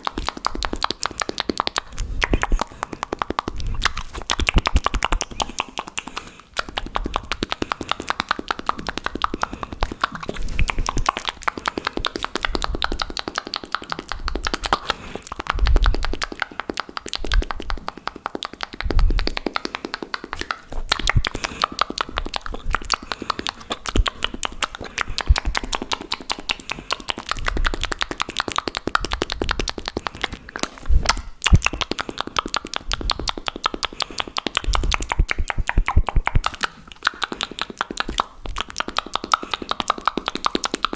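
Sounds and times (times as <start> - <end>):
heavier low mouth pops: 0.0 - 40.9
wet mouth clicks and pops: 0.0 - 40.9.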